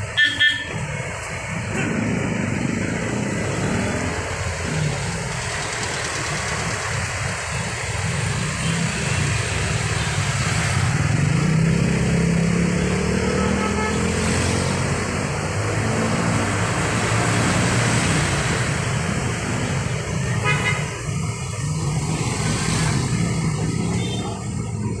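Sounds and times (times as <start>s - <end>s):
vehicle engines running: 0.0s - 25.0s
car horn toot: 0.1s - 0.8s, 13.3s - 14.1s, 20.4s - 20.9s.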